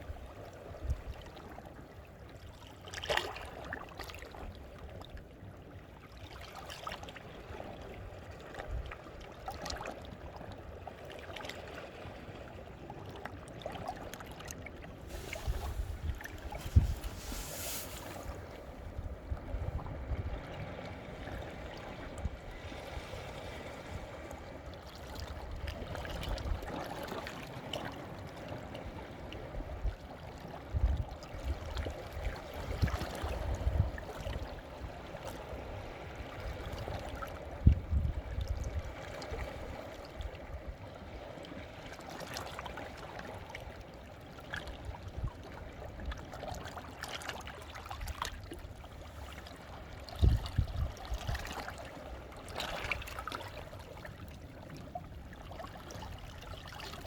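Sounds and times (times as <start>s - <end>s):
sea water gurgling among rocks: 14.6s - 27.7s.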